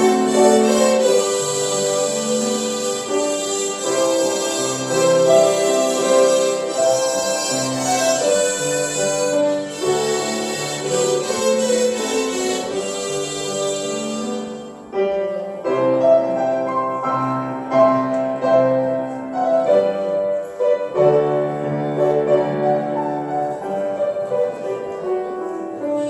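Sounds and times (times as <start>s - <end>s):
harmonica melody: 0.0s - 15.5s.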